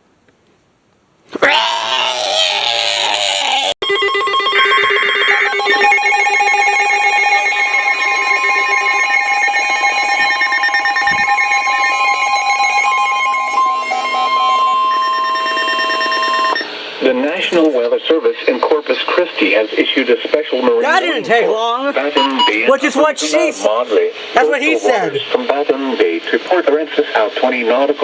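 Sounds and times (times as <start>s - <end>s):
electronic alert tones: 3.8s - 16.7s, 22.2s - 22.7s.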